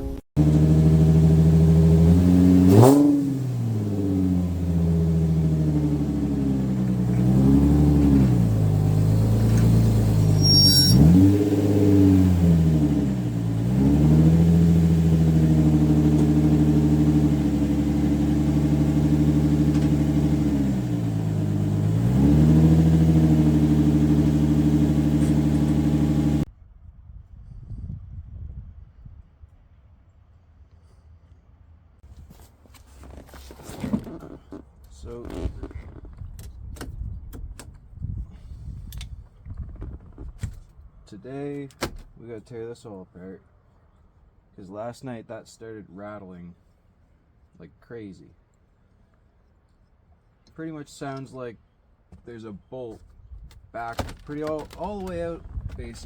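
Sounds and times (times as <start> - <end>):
car engine running: 0.0 - 26.5, 32.7 - 37.7, 53.0 - 56.0.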